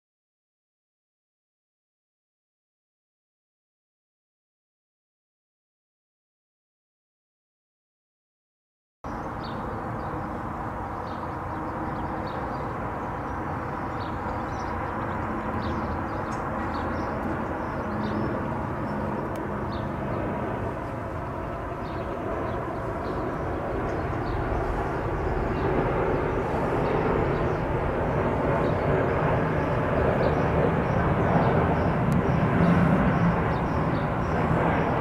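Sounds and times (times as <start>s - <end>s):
airliner engine rumble: 9.1s - 35.0s.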